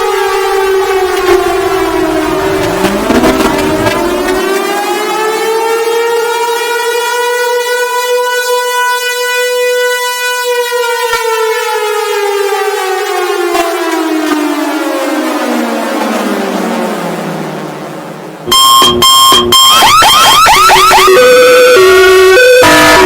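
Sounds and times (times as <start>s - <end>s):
warning siren wailing: 0.0s - 23.0s.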